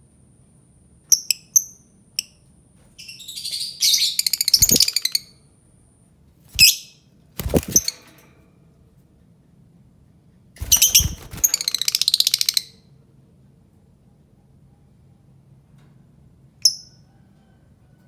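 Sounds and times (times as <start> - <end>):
lovebird chirping and chattering: 3.0 - 5.3, 6.6 - 7.9, 10.6 - 12.7.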